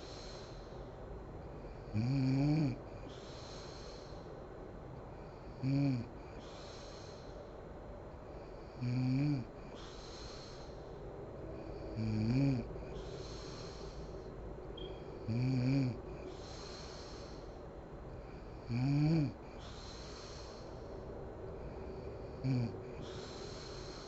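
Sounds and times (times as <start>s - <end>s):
breathy rush of air: 0.0s - 1.8s, 2.8s - 5.5s, 6.1s - 8.7s, 9.6s - 12.0s, 12.6s - 15.3s, 16.0s - 18.6s, 19.3s - 24.0s
woman snoring: 1.8s - 2.8s, 5.3s - 6.1s, 8.6s - 9.6s, 11.7s - 13.8s, 15.3s - 17.4s, 18.2s - 19.4s, 21.8s - 24.0s.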